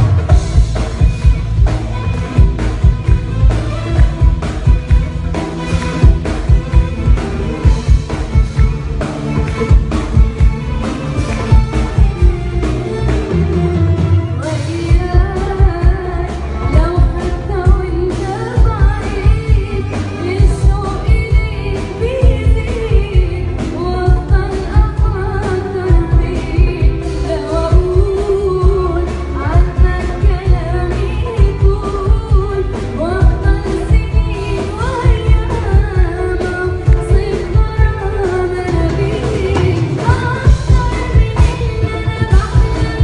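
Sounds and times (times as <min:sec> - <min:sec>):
band with steady drum beat: 0:00.0 - 0:43.0
woman singing pop song: 0:14.4 - 0:43.0.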